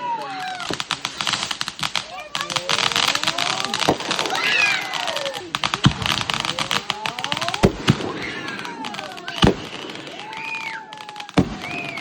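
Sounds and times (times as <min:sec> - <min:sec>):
fireworks crackling and popping: 0:00.0 - 0:12.0
deep firework booms: 0:00.6 - 0:12.0
gliding firework whistles: 0:02.8 - 0:06.9, 0:07.6 - 0:12.0.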